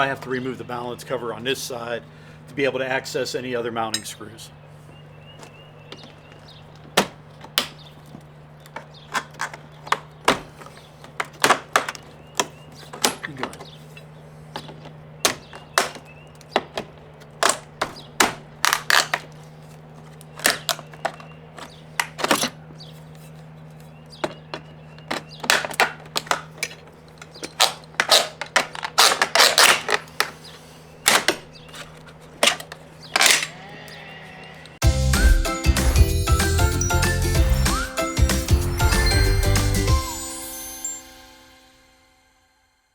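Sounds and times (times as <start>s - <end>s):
clicks and knocks of hand tools: 3.9s - 4.2s, 5.3s - 34.0s.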